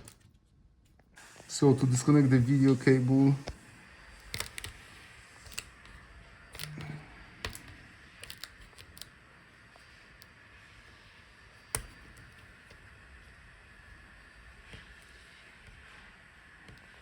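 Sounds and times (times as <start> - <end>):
fingers and tool clicking on laptop: 3.4 - 17.0.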